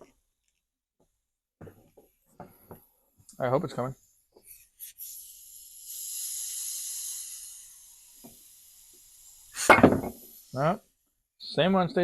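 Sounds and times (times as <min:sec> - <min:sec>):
compressed air hissing: 0:04.5 - 0:10.8.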